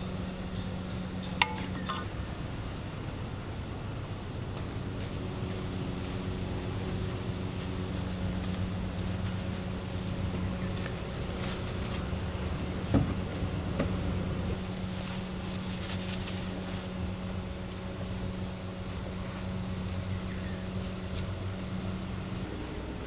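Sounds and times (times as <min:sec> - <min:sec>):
burner and fan humming: 0:00.0 - 0:23.0
spatula scraping a wok: 0:01.4 - 0:02.3.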